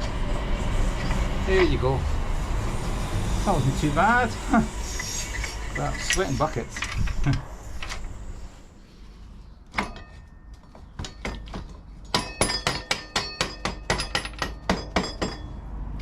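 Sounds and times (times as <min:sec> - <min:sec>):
hand tools tapping on metal: 0:09.7 - 0:15.6.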